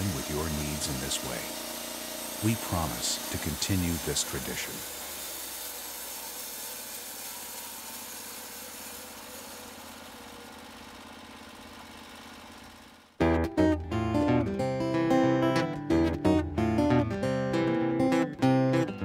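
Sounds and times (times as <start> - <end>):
sawmill engine running: 0.0 - 15.6
guitar music: 13.2 - 19.0.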